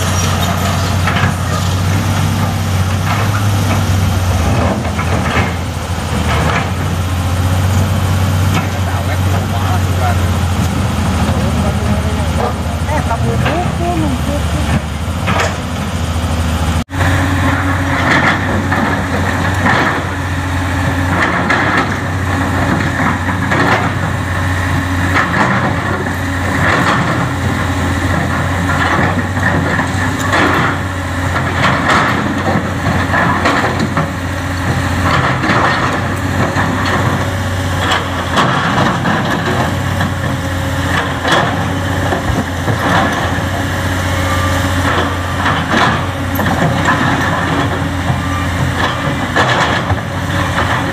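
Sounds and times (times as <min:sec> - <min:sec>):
excavator diesel engine running: 0:00.0 - 0:50.9.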